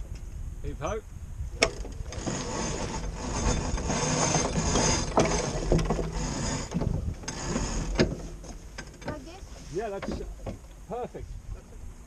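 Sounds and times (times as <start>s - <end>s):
wind: 0.0s - 12.0s
line hauled through blocks: 1.6s - 9.0s.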